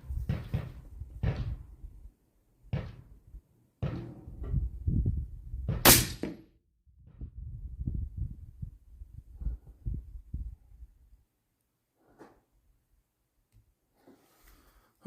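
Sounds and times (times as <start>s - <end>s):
knocks and thumps: 0.0s - 1.8s, 2.7s - 5.0s
loud sharp crack: 5.8s - 6.4s.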